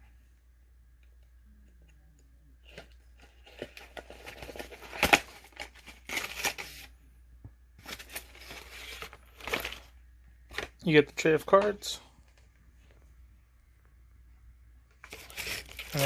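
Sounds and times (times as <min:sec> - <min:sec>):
cardboard and paper tearing: 0:15.0 - 0:16.0.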